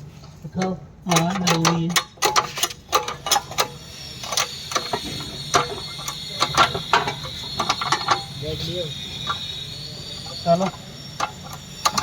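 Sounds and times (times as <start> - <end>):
sharp metallic clicks and knocks: 0.6 - 8.4.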